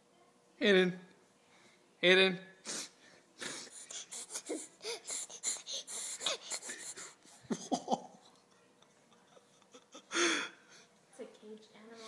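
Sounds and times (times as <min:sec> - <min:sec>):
baby sniffling: 0:02.7 - 0:07.3
baby vocal sounds: 0:03.4 - 0:07.2.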